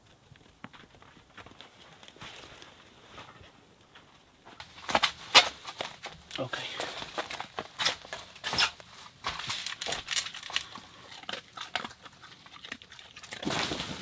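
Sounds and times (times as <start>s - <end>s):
sharp crunches: 7.0s - 12.3s.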